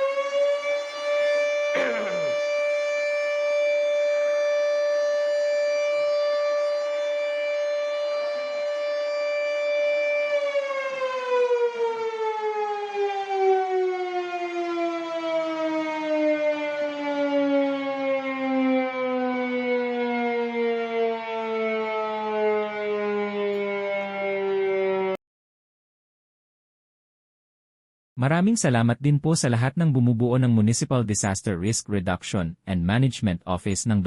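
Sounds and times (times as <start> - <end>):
air raid siren wailing: 0.0 - 25.2.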